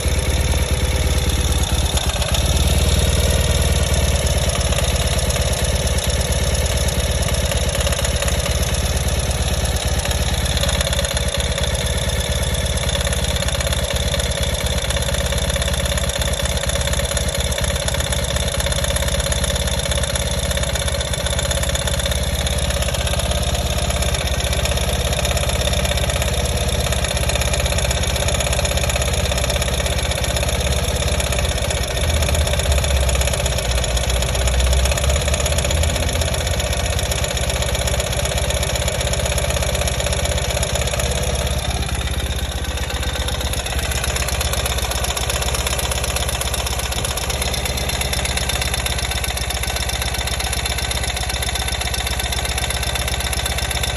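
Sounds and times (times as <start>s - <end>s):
motorcycle engine idling: 0.0s - 53.9s.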